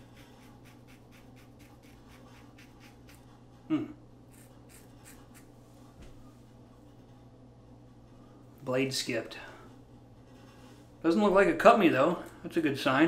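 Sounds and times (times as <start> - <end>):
razor scraping beard stubble: 0.0 - 3.3, 4.3 - 5.5.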